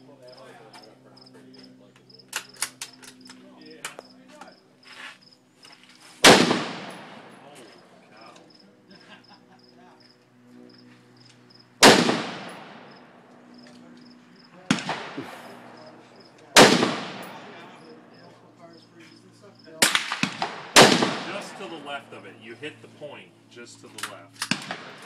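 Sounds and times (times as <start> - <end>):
insects chirping: 0.0 - 6.1, 7.0 - 19.8
gunshots with echo: 6.2 - 7.5, 11.8 - 13.0, 14.7 - 17.8, 19.8 - 22.0.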